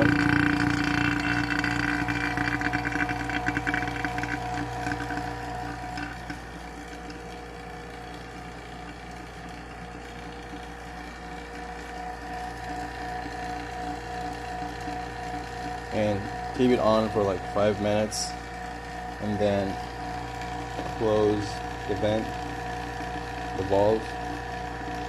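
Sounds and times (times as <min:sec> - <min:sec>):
fast rattle: 0:00.0 - 0:06.4
vacuum pump running: 0:00.0 - 0:25.0.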